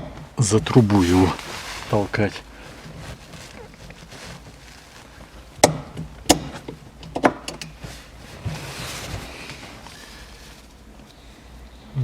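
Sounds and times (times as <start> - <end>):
sharp clicks and knocks: 5.6 - 7.8.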